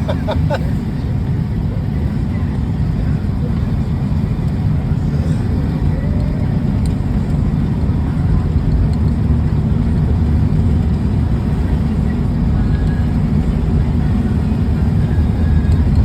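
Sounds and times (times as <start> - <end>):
vehicle driving on road: 0.0 - 16.0.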